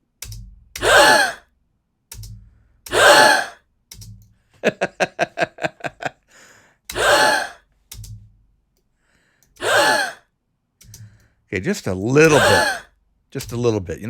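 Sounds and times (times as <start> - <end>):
women gasping: 0.8 - 1.4, 2.9 - 3.6, 6.2 - 7.7, 9.0 - 10.3, 12.3 - 12.9
short pitched pulses: 2.9 - 3.6.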